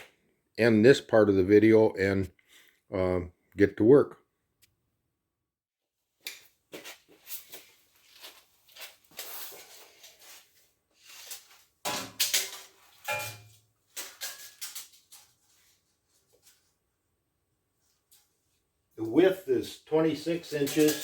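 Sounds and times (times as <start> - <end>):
metal clanking and knocking: 11.9 - 13.6.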